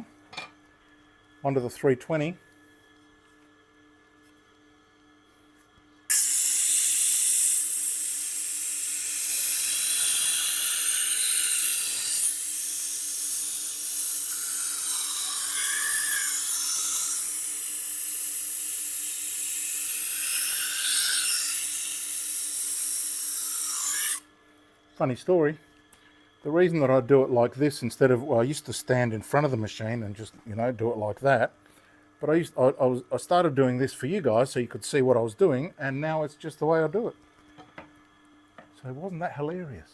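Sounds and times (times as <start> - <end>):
knife grinding on sharpening wheel: 6.1 - 24.2.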